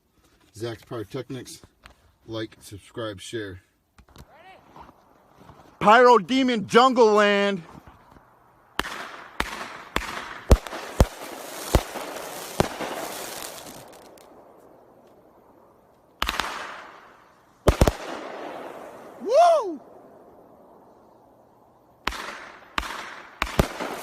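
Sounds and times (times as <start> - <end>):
firework shots and bursts: 8.8 - 15.0, 16.2 - 19.2, 22.0 - 24.0
man shouting woo: 19.2 - 19.8.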